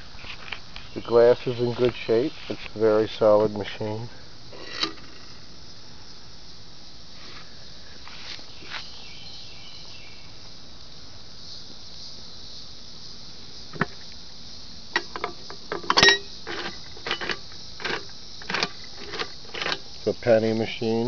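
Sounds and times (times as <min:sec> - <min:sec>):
steady high hiss: 0:00.0 - 0:21.0
hard objects clicking and knocking: 0:15.0 - 0:19.9.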